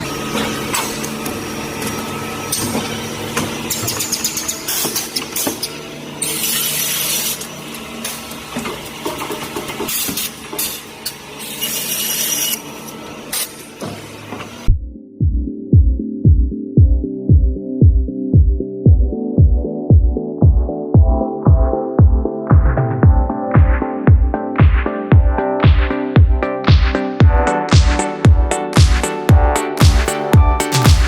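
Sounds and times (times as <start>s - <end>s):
sawmill machinery running: 0.0s - 14.7s
electronic music with heavy bass: 14.7s - 31.0s.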